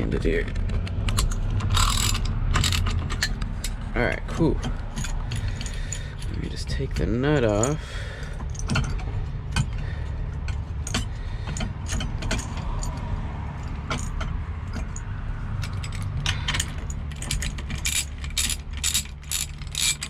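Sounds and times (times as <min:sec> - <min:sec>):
steady low rumble: 0:00.0 - 0:20.0
ratchet clicking: 0:01.1 - 0:03.8, 0:15.6 - 0:20.0.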